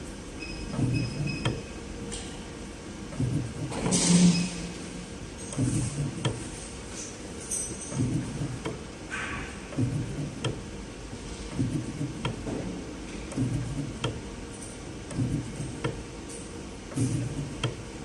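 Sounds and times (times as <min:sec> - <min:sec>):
low motor whir: 0:03.1 - 0:06.5, 0:08.0 - 0:08.9, 0:09.7 - 0:10.7, 0:11.4 - 0:12.5, 0:13.2 - 0:14.4, 0:15.1 - 0:16.0, 0:16.9 - 0:18.0.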